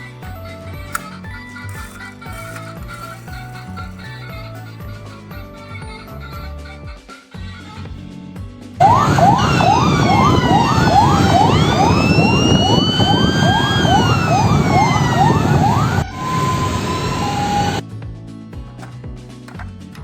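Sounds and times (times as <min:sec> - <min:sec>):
toy ambulance siren: 0:08.8 - 0:17.8.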